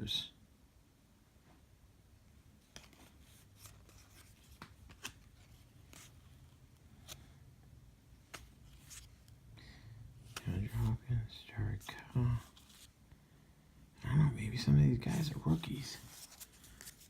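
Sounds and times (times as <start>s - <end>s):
trading cards flipping: 2.7s - 6.2s, 8.2s - 9.3s, 16.0s - 17.0s.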